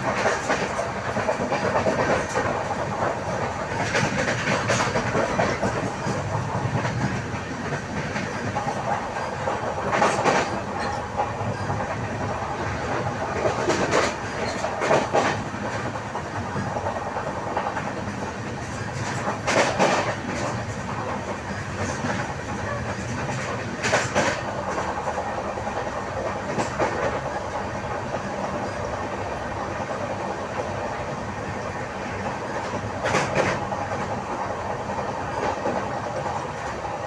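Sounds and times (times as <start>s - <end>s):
train coaches clattering on rails: 0.0s - 37.0s.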